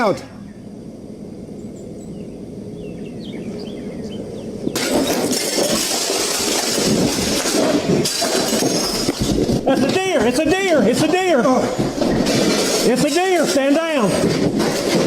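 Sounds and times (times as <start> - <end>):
faint bird chirps: 0.2 - 0.8, 1.6 - 4.8
loud crashing and clattering: 4.7 - 15.0.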